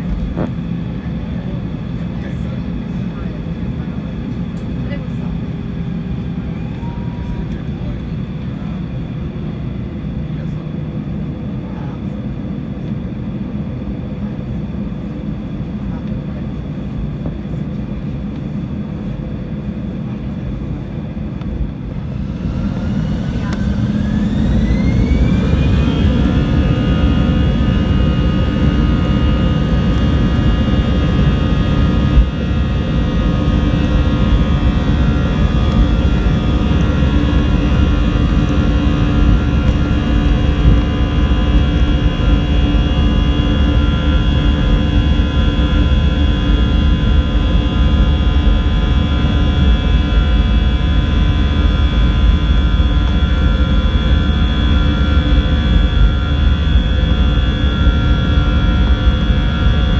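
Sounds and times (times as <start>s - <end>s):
jet engines whining: 0.0s - 59.9s.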